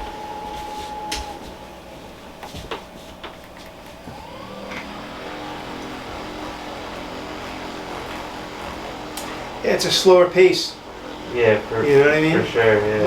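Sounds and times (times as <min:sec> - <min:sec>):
massager motor whining: 0:00.0 - 0:13.0
massager clicks: 0:02.4 - 0:09.8.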